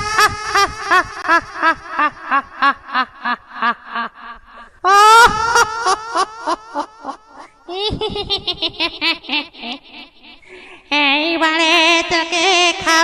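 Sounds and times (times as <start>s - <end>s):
high-pitched cackling laugh: 0.0s - 10.2s.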